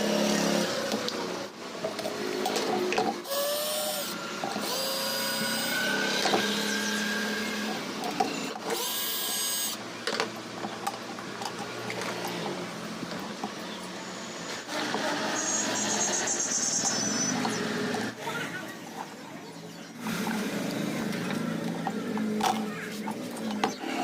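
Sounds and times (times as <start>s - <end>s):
electric power tool motor whine: 3.3s - 9.8s.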